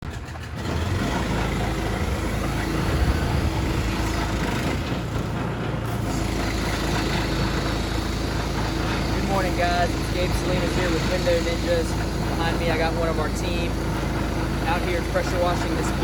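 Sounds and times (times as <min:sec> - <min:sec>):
engine hum: 0:00.0 - 0:16.0.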